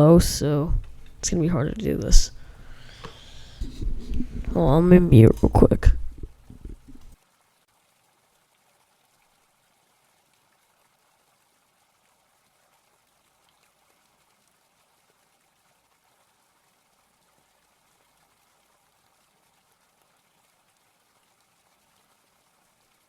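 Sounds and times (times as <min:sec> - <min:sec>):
faint hiss: 0:00.0 - 0:07.6.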